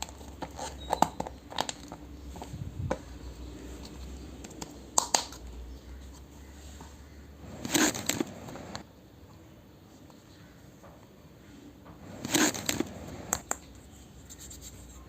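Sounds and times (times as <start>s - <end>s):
packaging rustling: 7.4s - 8.8s, 12.0s - 13.4s.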